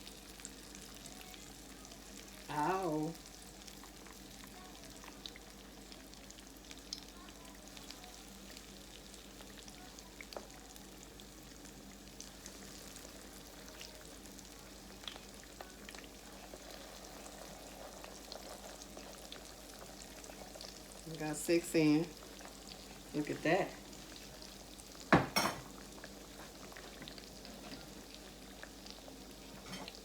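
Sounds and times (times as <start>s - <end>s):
food sizzling in a pan: 0.0s - 30.0s.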